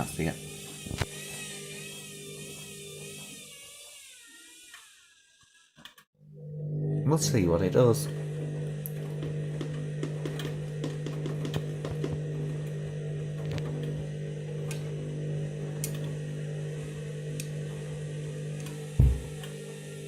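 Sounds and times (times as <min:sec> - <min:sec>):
washing machine drum turning: 0:08.0 - 0:14.0, 0:18.5 - 0:19.8.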